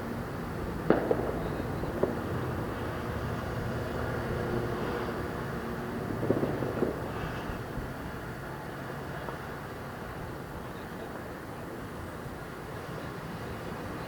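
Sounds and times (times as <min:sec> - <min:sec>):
distant fireworks popping: 0:00.7 - 0:08.2.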